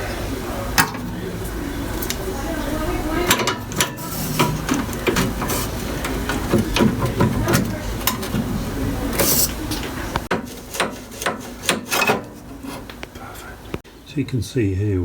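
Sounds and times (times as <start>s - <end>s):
tools clicking and knocking: 3.3s - 8.5s, 9.2s - 13.1s.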